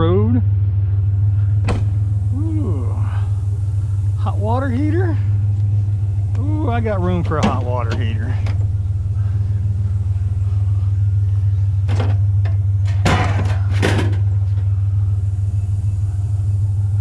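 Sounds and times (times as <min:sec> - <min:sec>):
pickup truck engine rumbling: 0:00.0 - 0:17.0
short clunks: 0:01.6 - 0:02.1, 0:07.2 - 0:08.8, 0:11.8 - 0:14.7.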